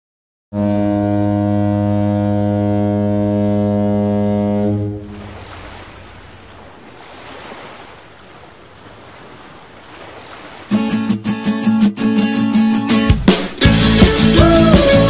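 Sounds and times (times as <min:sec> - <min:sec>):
boat horn blast: 0:00.5 - 0:07.7
wind and sea rushing: 0:00.8 - 0:11.0
guitar music: 0:10.7 - 0:15.0.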